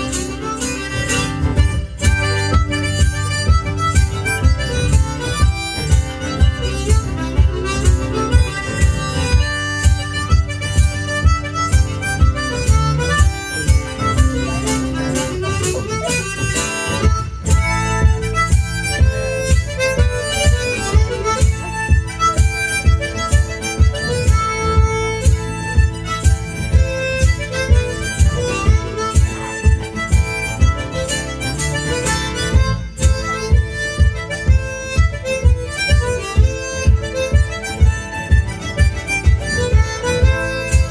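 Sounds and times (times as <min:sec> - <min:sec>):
guitar: 0:00.0 - 0:40.9
harmonica: 0:00.0 - 0:40.9
kick drum beat: 0:17.0 - 0:30.8, 0:32.5 - 0:40.9.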